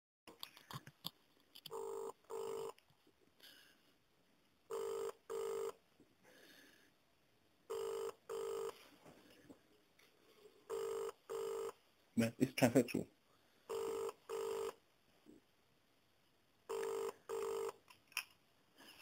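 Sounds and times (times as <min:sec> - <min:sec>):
telephone ringing tone: 0:01.7 - 0:02.8, 0:04.7 - 0:05.8, 0:07.7 - 0:08.8, 0:10.7 - 0:11.8, 0:13.7 - 0:14.8, 0:16.7 - 0:17.8.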